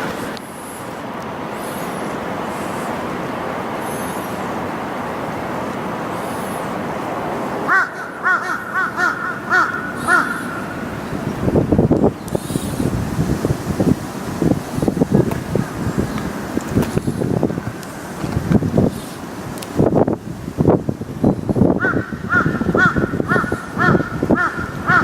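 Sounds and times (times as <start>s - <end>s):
steady background noise: 0.0s - 25.0s
short arched animal calls: 7.7s - 10.8s, 21.8s - 25.0s.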